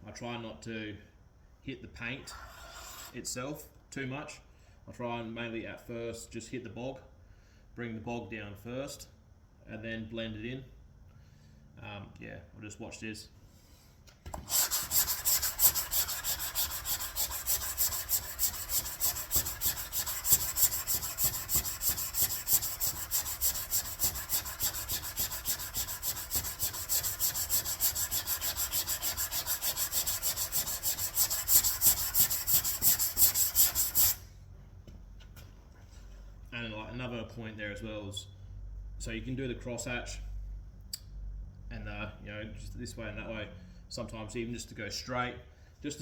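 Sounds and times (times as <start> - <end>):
sandpaper rasping on filler: 2.3 - 3.2, 14.3 - 34.3.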